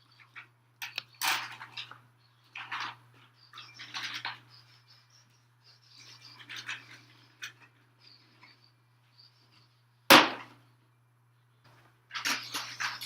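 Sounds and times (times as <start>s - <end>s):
sharp loud knock: 10.1s - 10.5s.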